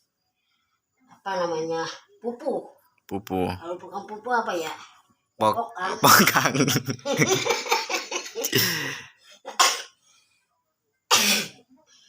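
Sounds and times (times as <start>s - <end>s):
person speaking: 3.1s - 3.7s
person coughing: 11.1s - 11.6s.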